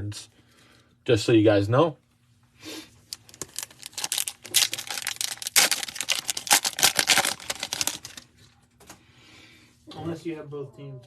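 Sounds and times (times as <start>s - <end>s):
trading card pack crinkling: 3.1s - 8.6s.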